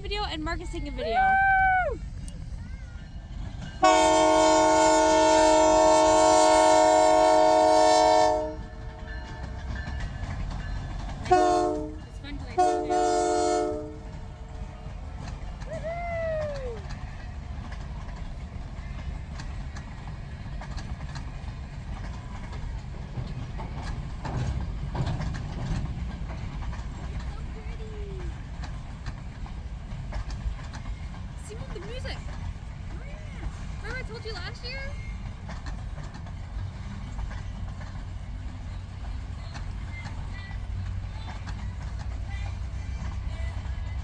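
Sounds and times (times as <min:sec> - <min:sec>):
train rolling: 0:00.0 - 0:44.0
train horn chord: 0:03.8 - 0:09.7, 0:11.2 - 0:14.4
wheel clicks at rail joints: 0:08.5 - 0:12.6, 0:13.7 - 0:44.0.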